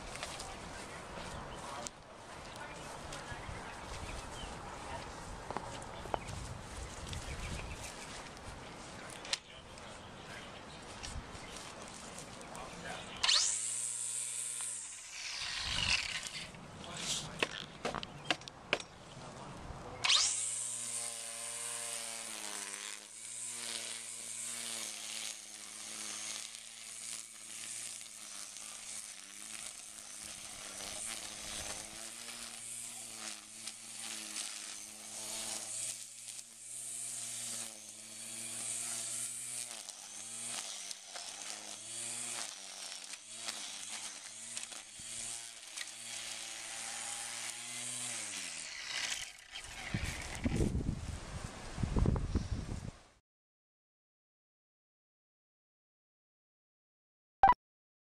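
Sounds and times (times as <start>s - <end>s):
string trimmer motor whining: 5.5s - 18.4s, 19.9s - 50.9s.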